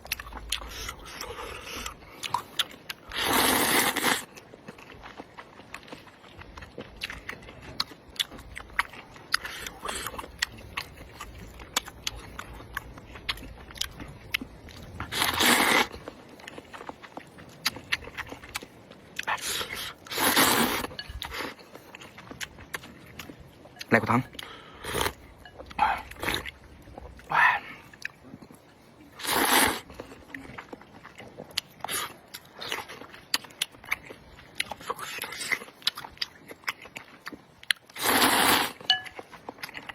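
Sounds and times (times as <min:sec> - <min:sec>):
wet chewing: 0:00.0 - 0:39.9
loud slurp of noodles: 0:03.1 - 0:04.3, 0:15.1 - 0:15.9, 0:19.3 - 0:20.8, 0:29.2 - 0:29.8, 0:37.9 - 0:38.8.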